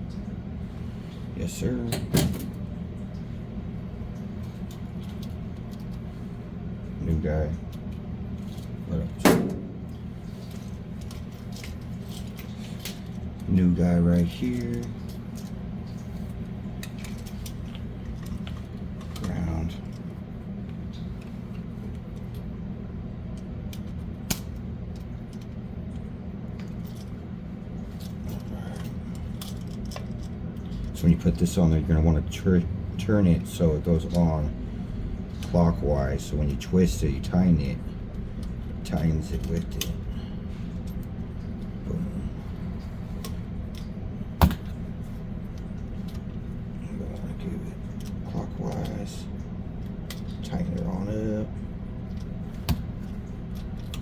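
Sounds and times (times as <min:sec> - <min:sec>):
steady low hum: 0:00.0 - 0:54.0
small clicks of wiring work: 0:04.1 - 0:06.1, 0:42.8 - 0:44.8, 0:47.2 - 0:51.1, 0:52.0 - 0:54.0.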